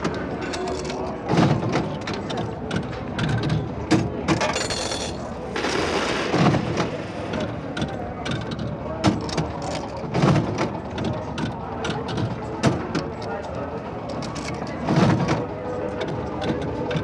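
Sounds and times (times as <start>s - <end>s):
slot machine clattering: 0.0s - 8.6s.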